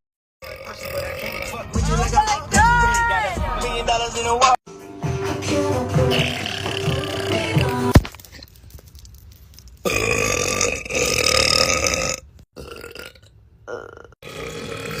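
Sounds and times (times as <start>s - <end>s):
girl burping loudly: 9.8s - 15.0s.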